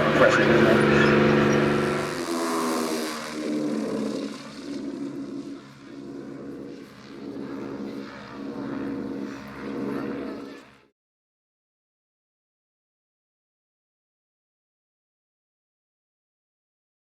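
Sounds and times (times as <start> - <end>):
propeller plane engines droning: 0.0 - 10.9.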